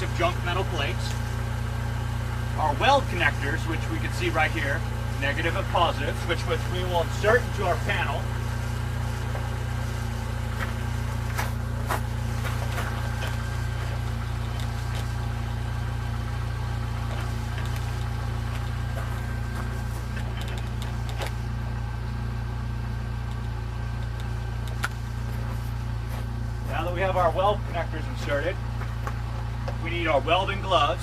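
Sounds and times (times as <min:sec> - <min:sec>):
car engine idling: 0:00.0 - 0:31.0.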